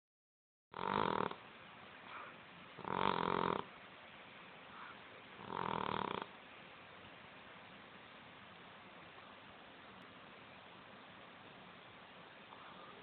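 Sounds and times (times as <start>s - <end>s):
cat snoring: 0.7s - 1.4s, 2.8s - 3.7s, 5.4s - 6.4s.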